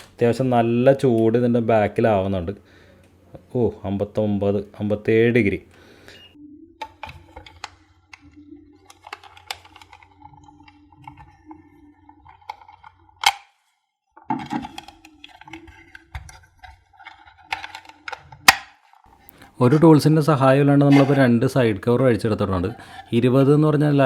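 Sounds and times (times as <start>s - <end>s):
plastic clicks and scraping: 6.8s - 13.6s, 14.2s - 19.5s
plastic caps snapping free: 12.4s - 13.5s, 14.2s - 19.1s.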